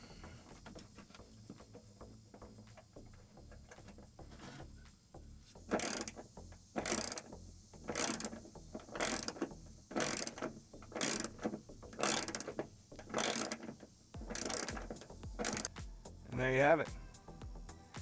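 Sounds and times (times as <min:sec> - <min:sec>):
ratchet wrench clicks: 0:05.7 - 0:16.8.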